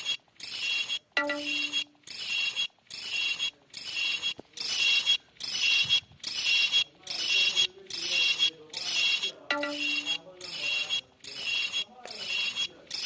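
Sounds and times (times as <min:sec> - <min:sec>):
high ringing sound effect: 0:01.2 - 0:02.0, 0:09.5 - 0:10.2.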